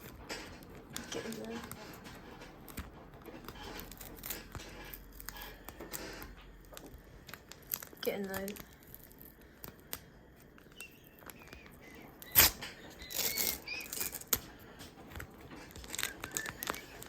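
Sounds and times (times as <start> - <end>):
foil packet crinkling: 0.0 - 17.0
wrapper squeaks: 0.0 - 17.0.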